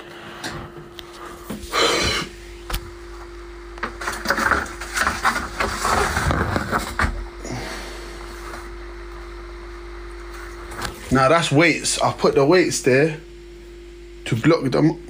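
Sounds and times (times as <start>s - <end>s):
steady hum: 0.0s - 15.0s
objects scraping and clattering: 3.8s - 7.6s.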